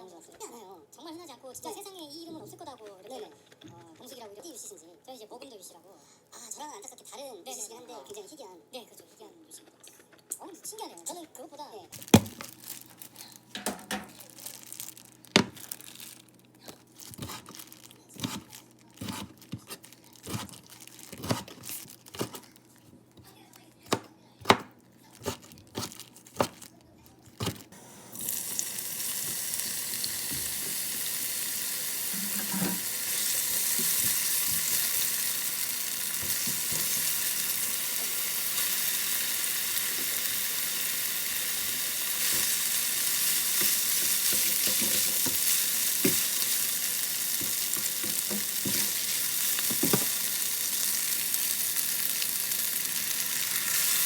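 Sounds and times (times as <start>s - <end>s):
utensil knocking: 13.6s - 14.2s, 32.2s - 33.0s
food sizzling in a hot pan: 27.7s - 54.0s.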